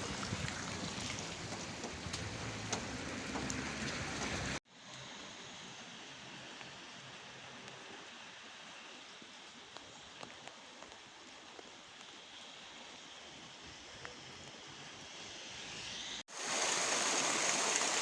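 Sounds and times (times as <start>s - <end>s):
rain patter: 0.0s - 4.6s, 16.3s - 18.0s
raindrops ticking close by: 0.0s - 4.6s.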